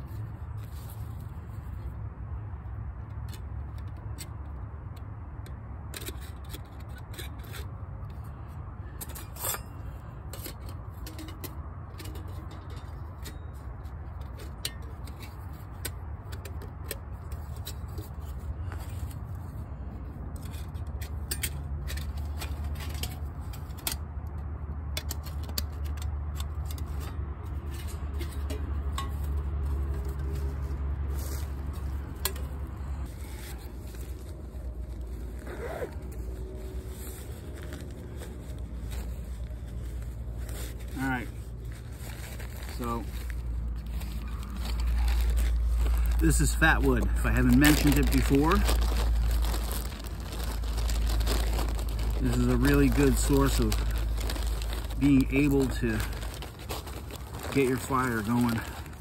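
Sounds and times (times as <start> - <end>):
twigs clicking and snapping: 42.7 - 59.0.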